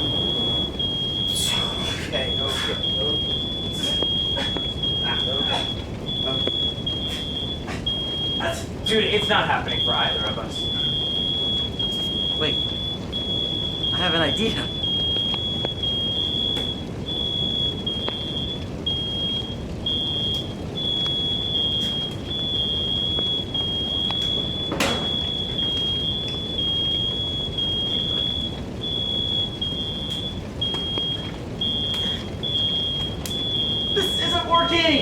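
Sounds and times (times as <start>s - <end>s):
smoke alarm tone: 0.0s - 35.0s
steady rushing noise: 0.0s - 35.0s.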